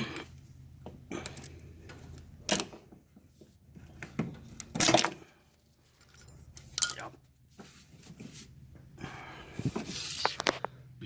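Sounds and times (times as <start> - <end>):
metal hardware clicks and clinks: 4.6 - 7.1.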